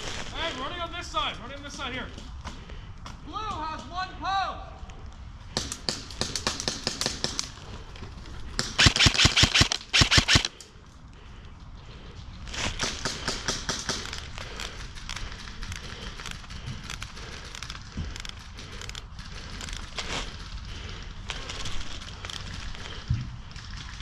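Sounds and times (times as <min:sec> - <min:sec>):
airsoft rifles rapid firing: 0:05.6 - 0:07.6, 0:08.6 - 0:10.6, 0:12.8 - 0:22.6.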